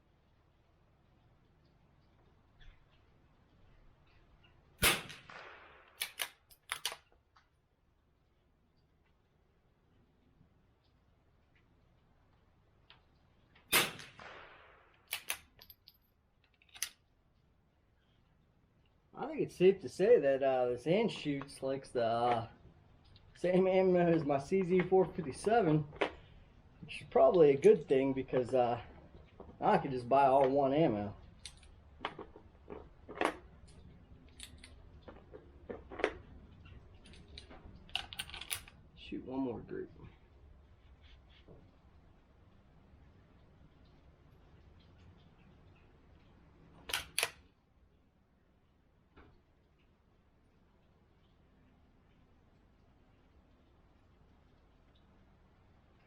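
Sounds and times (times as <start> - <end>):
rifle shot: 4.8 - 7.0, 13.7 - 15.5
rifle bolt clicks: 4.8 - 7.1, 15.1 - 15.9, 16.5 - 17.0, 37.9 - 38.8, 46.9 - 47.4
handling clicks and clacks: 5.9 - 7.2, 31.2 - 38.8.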